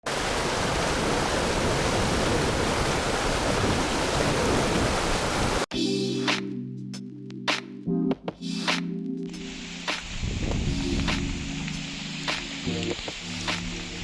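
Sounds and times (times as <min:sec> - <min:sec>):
waterfall roaring: 0:00.0 - 0:05.6
music with sharp beats: 0:05.7 - 0:14.0.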